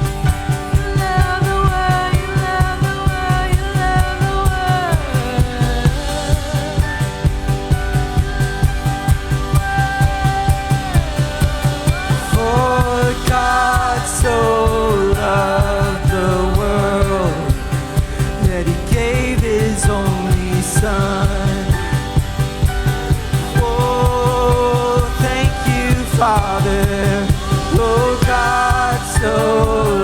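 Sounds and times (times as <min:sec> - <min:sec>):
bass and guitar: 0:00.0 - 0:30.0
drums keeping a steady beat: 0:00.0 - 0:30.0
person singing: 0:00.0 - 0:30.0.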